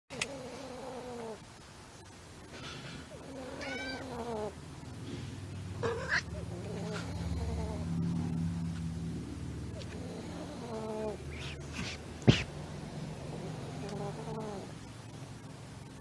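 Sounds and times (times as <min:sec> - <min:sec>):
cat meowing: 0:03.4 - 0:04.5.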